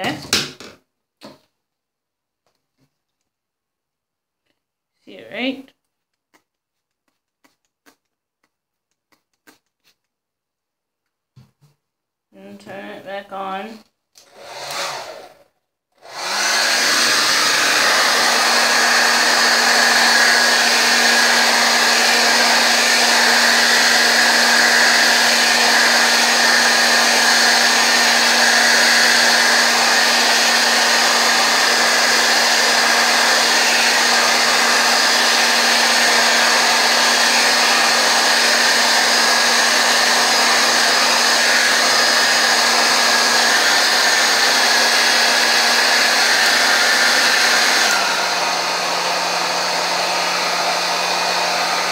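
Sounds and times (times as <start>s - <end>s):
hair dryer running: 14.2s - 51.9s.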